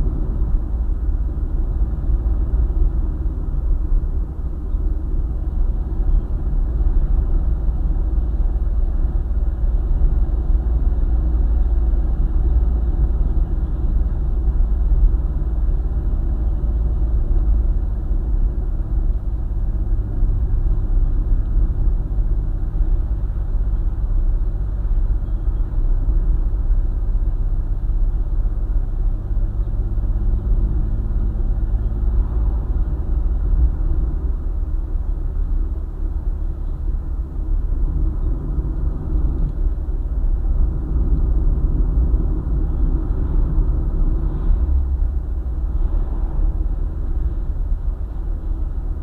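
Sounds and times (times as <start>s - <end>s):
car engine and tyre noise: 0.0s - 49.0s.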